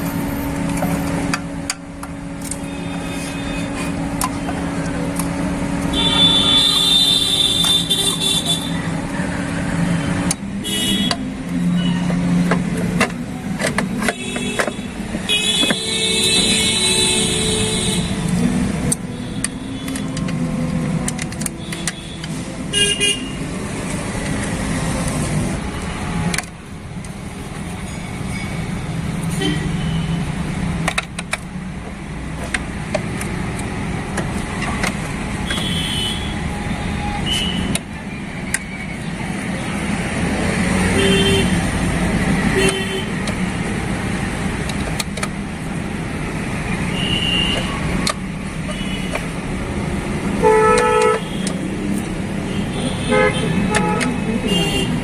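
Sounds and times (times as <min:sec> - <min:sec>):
road traffic passing: 0:00.0 - 0:55.0
vehicle horn toots: 0:05.9 - 0:08.8, 0:35.4 - 0:36.4, 0:40.9 - 0:41.6, 0:50.4 - 0:51.6, 0:52.5 - 0:55.0.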